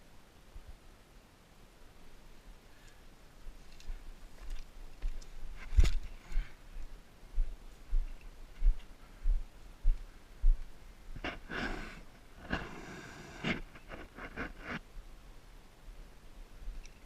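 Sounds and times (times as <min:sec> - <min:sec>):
person breathing hard: 0:06.1 - 0:06.7, 0:11.2 - 0:13.7.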